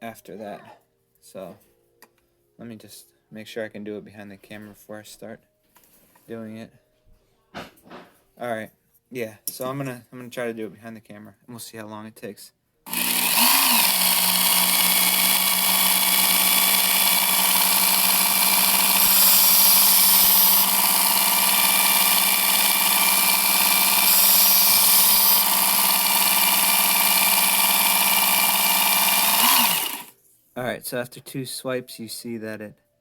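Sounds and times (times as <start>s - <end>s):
belt sharpener motor running: 12.9s - 30.1s.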